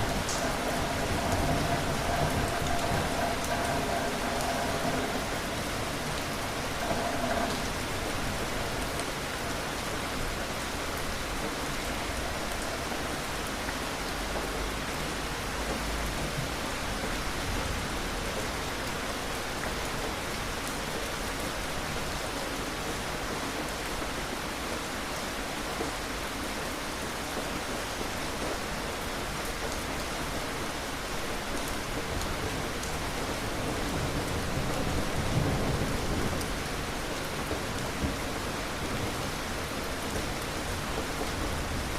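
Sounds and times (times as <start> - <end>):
distant thunder rumble: 0.0 - 11.2
steady rain falling: 0.0 - 41.9.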